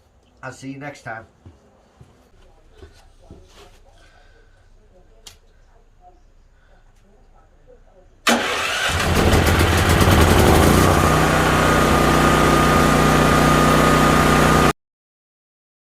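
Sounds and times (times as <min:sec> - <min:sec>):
engine starting and running: 0:08.2 - 0:14.7.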